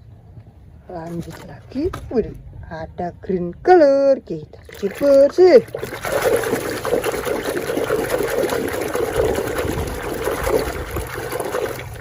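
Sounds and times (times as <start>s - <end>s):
water running and trickling: 4.7s - 12.0s.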